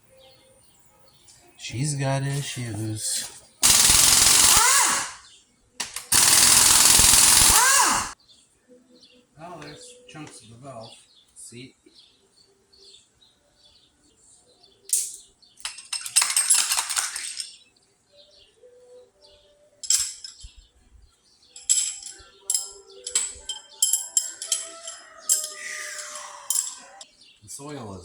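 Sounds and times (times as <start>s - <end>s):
birds chirping faintly: 0.0s - 4.3s, 8.1s - 28.0s
metal tools clinking: 15.6s - 17.7s, 19.8s - 20.6s, 21.5s - 27.1s.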